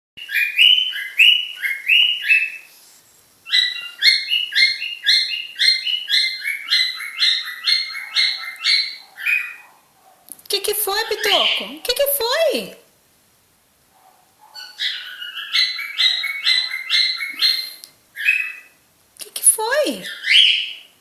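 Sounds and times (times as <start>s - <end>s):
cockatiel chirping: 0.2s - 2.7s, 3.4s - 9.7s, 14.5s - 18.8s, 20.0s - 20.9s.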